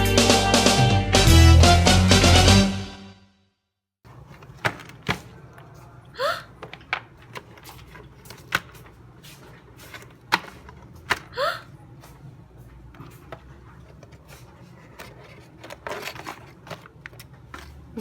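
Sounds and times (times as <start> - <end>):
packaging rustling: 13.0 - 18.0.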